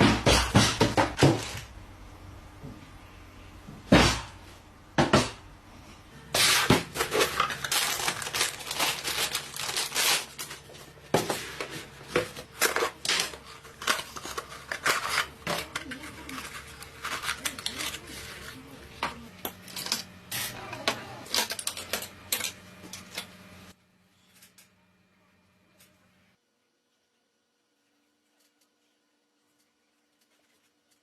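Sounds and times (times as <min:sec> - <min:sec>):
plastic and cardboard crinkling: 0:06.3 - 0:19.8, 0:29.6 - 0:31.0.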